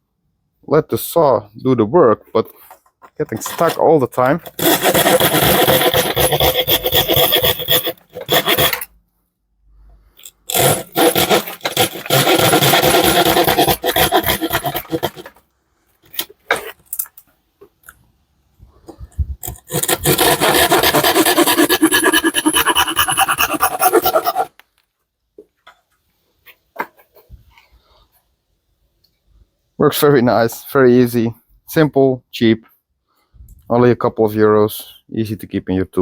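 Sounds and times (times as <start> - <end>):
saw blade rasping through plywood: 3.3 - 8.9, 10.5 - 15.4, 19.4 - 24.6.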